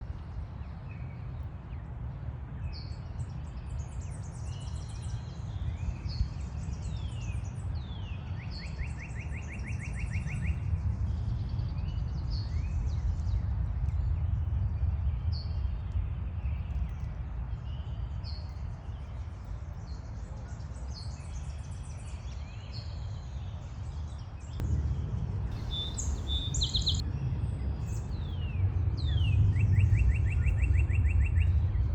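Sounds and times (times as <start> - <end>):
steady low rumble: 24.6 - 29.5
high-pitched bird chirps: 25.6 - 27.0.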